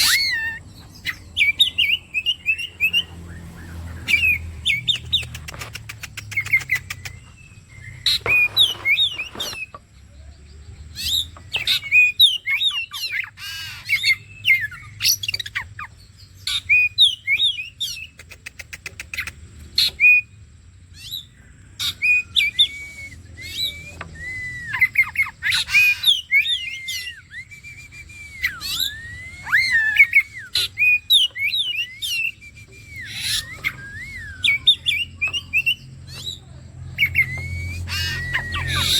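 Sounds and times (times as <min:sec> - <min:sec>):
songbird singing: 0:00.0 - 0:38.9.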